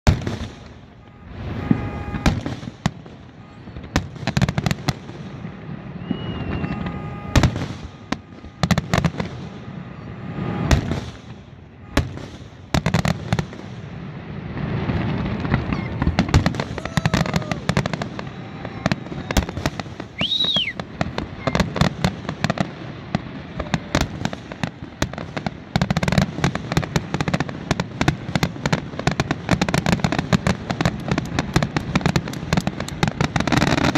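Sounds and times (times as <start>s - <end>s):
falling firework whistle: 0.1s - 13.1s, 14.8s - 22.7s
rumble and crackle: 14.4s - 20.2s, 20.8s - 33.9s
firework shells bursting: 29.9s - 33.9s.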